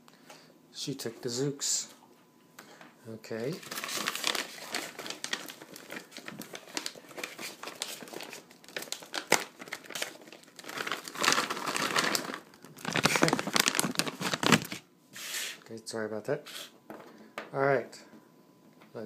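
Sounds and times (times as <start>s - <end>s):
plastic packaging crinkling: 3.4s - 14.9s.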